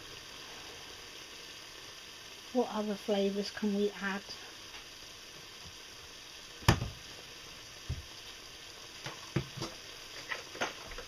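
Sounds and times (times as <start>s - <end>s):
food sizzling in a pan: 0.0s - 11.0s
kitchen knocks and clatters: 6.6s - 7.0s, 9.0s - 11.0s.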